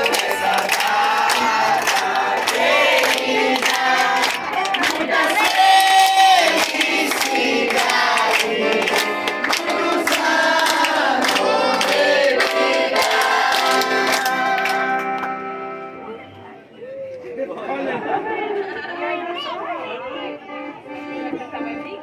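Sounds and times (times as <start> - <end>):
group of voices singing: 0.0 - 15.2
accordion music: 0.0 - 16.7, 18.3 - 22.0.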